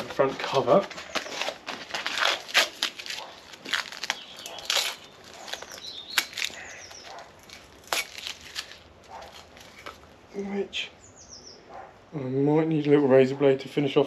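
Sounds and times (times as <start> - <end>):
masking tape peeling: 0.7 - 10.0.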